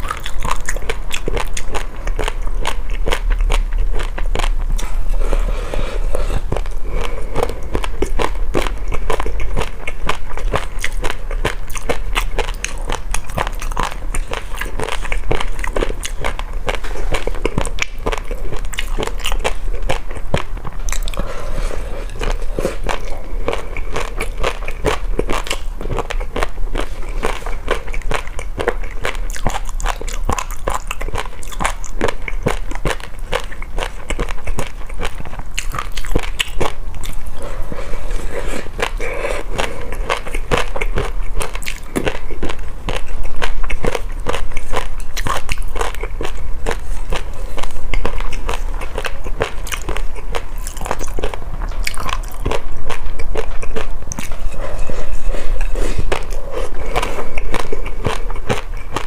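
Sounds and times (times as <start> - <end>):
crunchy food chewing: 0.0 - 59.0.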